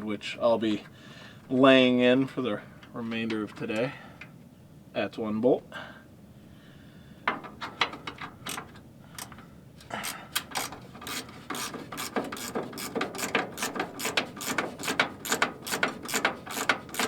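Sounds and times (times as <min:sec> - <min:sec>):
ratchet wrench clicking: 0:08.4 - 0:17.0.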